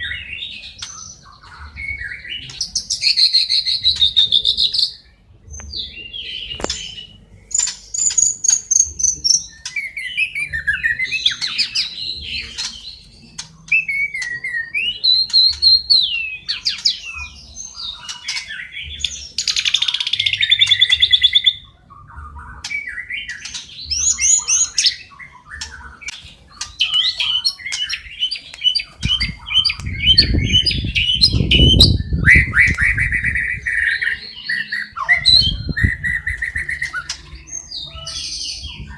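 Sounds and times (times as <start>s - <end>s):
small birds chirping: 0.0s - 38.9s
songbird whistling and trilling: 0.0s - 38.9s.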